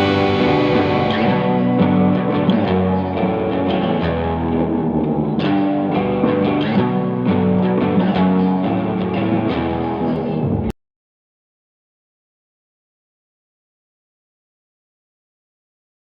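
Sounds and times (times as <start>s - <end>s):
guitar music with rhythmic beat: 0.0s - 10.7s.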